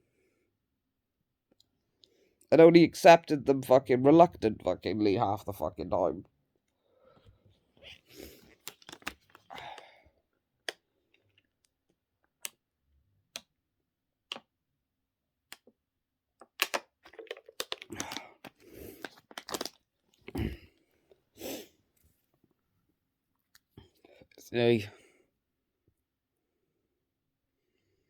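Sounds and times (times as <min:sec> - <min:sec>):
crackling crunching noises: 0:16.6 - 0:20.7.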